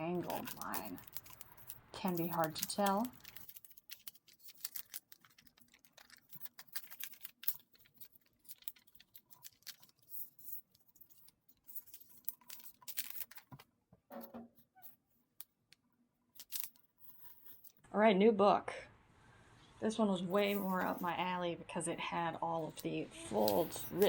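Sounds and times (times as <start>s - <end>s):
paper folding and crinkling: 0.0s - 13.7s, 16.3s - 17.8s, 20.3s - 21.2s, 23.2s - 24.0s.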